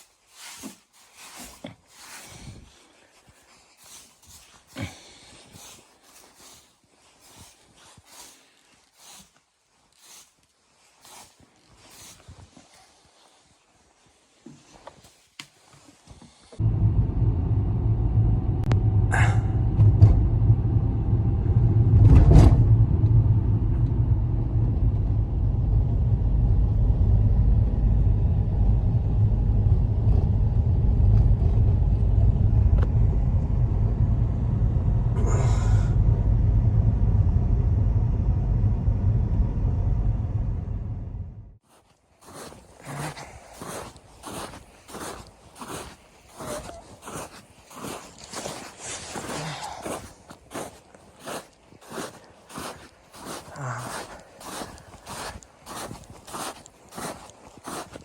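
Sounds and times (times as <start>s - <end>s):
storm wind buffeting microphone: 16.6s - 41.6s.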